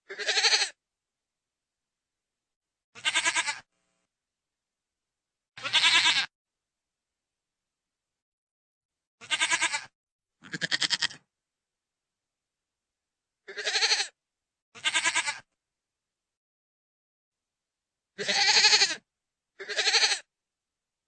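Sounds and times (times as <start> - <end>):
goat bleating: 0.0 - 0.8, 3.0 - 3.7, 5.6 - 6.3, 9.2 - 11.2, 13.5 - 14.1, 14.8 - 15.5, 18.2 - 19.0, 19.6 - 20.3.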